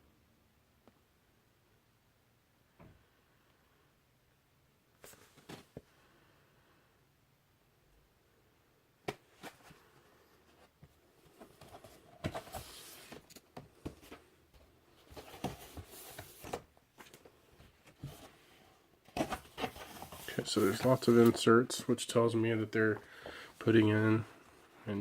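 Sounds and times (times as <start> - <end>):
vinyl record being unwrapped: 19.1 - 21.5
plastic and paper crinkling: 19.1 - 21.9.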